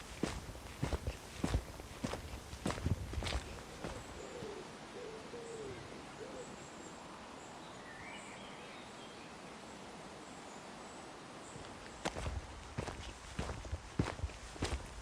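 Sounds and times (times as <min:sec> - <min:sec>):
low hooting bird calls: 0:00.0 - 0:06.8
wind hiss: 0:00.0 - 0:07.9.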